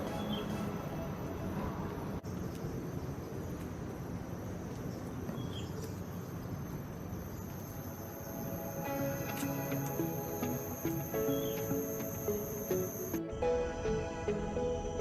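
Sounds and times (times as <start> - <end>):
insects buzzing: 2.3 - 13.2.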